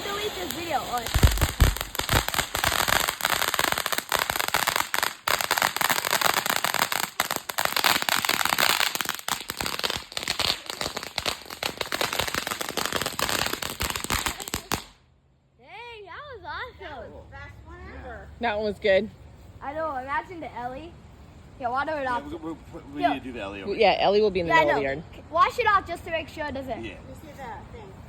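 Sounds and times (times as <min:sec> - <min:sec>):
ground firework crackling: 0:00.0 - 0:15.1.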